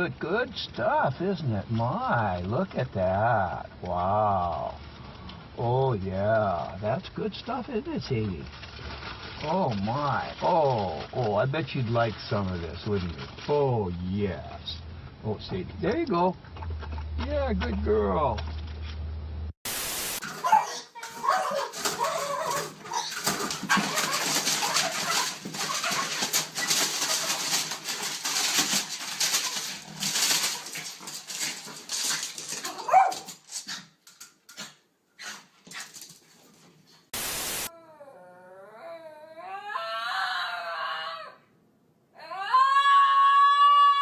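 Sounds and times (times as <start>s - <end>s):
clattering noise: 20.2s - 34.8s
dog whining: 20.3s - 28.6s, 32.1s - 33.3s, 37.6s - 41.4s
dog whimpering and yipping: 20.4s - 27.5s, 32.6s - 33.3s.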